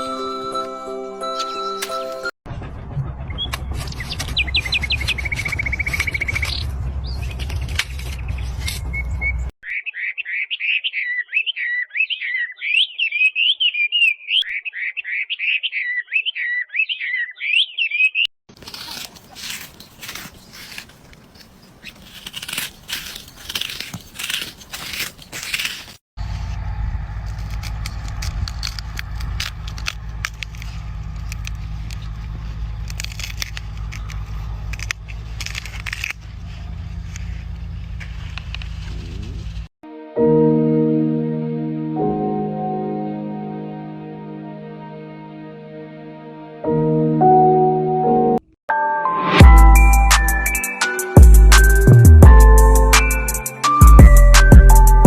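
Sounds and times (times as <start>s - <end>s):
bird warbling song: 8.9s - 23.2s
crisp crackling and snapping: 18.5s - 26.0s, 27.3s - 39.6s
low rumble with clicks: 26.2s - 39.7s.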